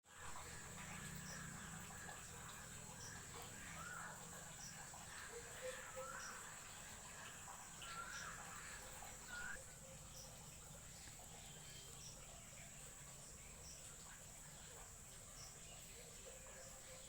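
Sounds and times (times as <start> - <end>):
high insect drone: 0.1 - 10.3
swooping bird calls: 0.4 - 9.6.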